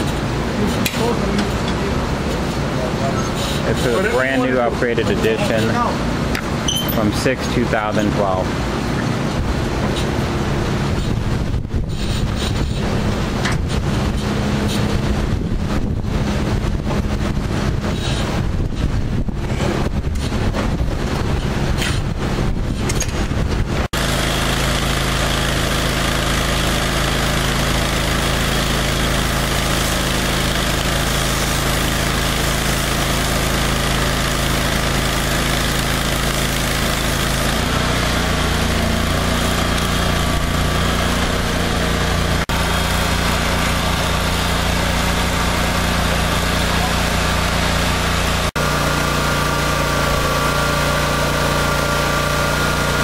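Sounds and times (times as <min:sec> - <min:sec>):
pressure washer engine running: 0:00.0 - 0:53.0
wind buffeting microphone: 0:10.6 - 0:23.9.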